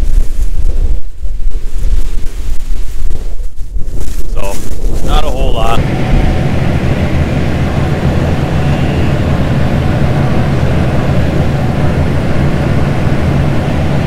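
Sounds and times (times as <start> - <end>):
combine harvester engine drone: 4.4 - 14.0
machinery noise: 4.4 - 14.0.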